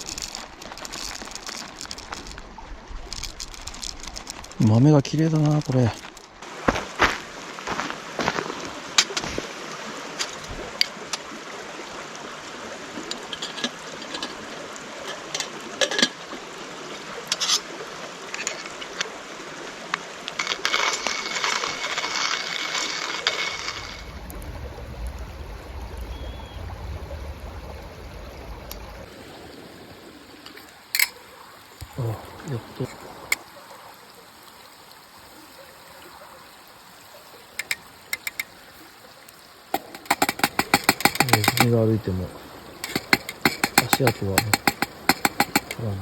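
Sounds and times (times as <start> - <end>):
coffee beans rattling: 0.0 - 2.4, 3.0 - 6.4, 20.4 - 24.1, 39.8 - 42.0, 42.8 - 46.0
low rumble: 23.8 - 29.1.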